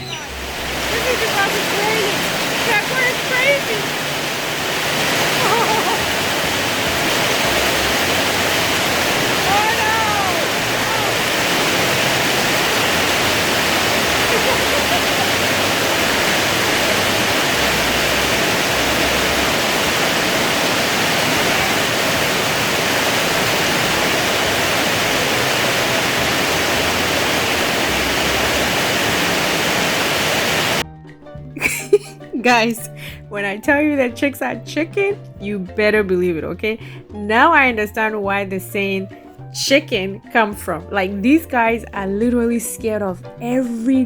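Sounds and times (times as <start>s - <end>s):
heavy rain drumming on roof: 0.0s - 30.8s.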